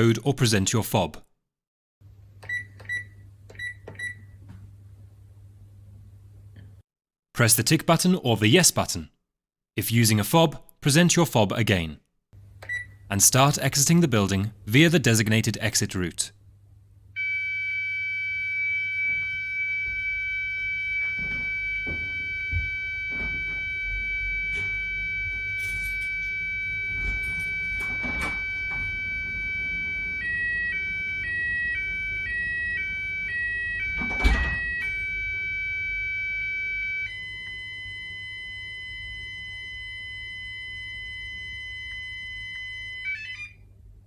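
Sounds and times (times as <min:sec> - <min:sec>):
two-pitch alternating tone: 0:17.2 - 0:37.3
alarm keypad tone: 0:17.2 - 0:43.6
knocks and thumps: 0:21.0 - 0:23.7.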